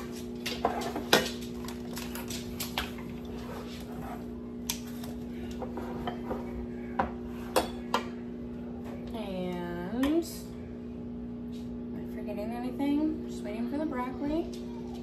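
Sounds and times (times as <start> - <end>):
dishes and utensils clinking: 4.8 - 8.2.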